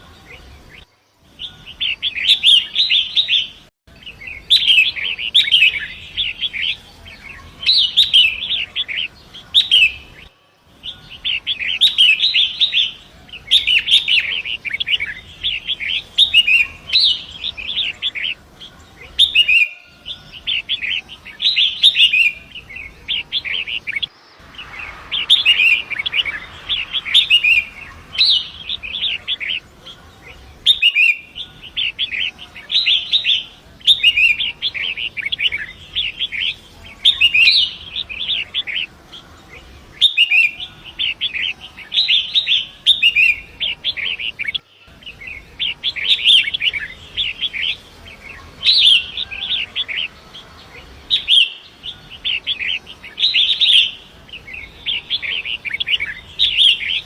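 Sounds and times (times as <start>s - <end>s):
bird chattering song: 0.0s - 57.0s
river water rushing: 24.1s - 29.8s.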